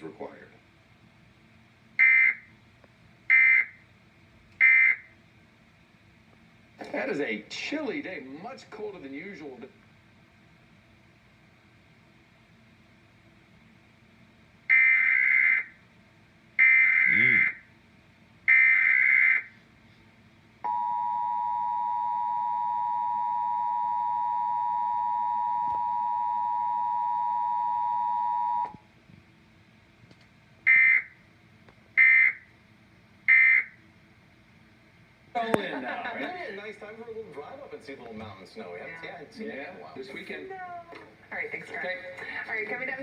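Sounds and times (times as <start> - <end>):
steady two-tone attention signal: 20.6 - 28.8.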